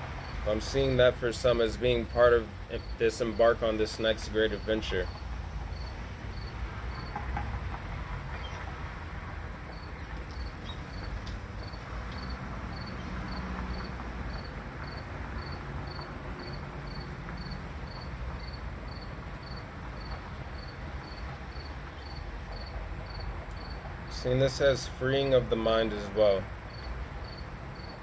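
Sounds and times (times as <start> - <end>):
cricket chirping: 1.9 - 3.1, 5.0 - 7.2, 8.3 - 23.8, 26.6 - 28.0.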